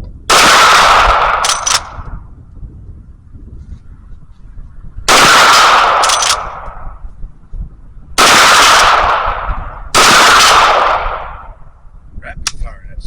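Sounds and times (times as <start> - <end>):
loud gunshots: 0.3 - 2.0, 5.1 - 6.7, 8.2 - 11.6.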